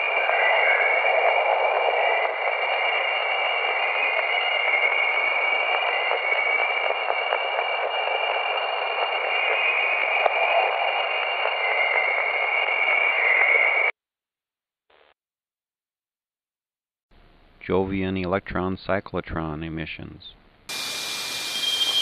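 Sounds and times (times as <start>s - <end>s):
radio-like hiss: 0.0s - 13.9s, 20.7s - 22.0s
high held tones: 20.7s - 22.0s.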